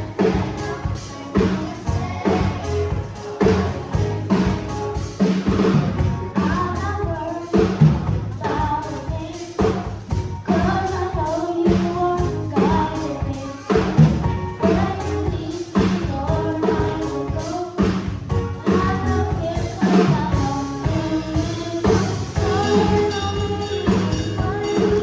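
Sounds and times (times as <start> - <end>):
children's choir singing: 0.0 - 7.8, 18.5 - 25.0
bass line: 0.0 - 17.5, 18.1 - 25.0
drum kit beat: 0.0 - 25.0.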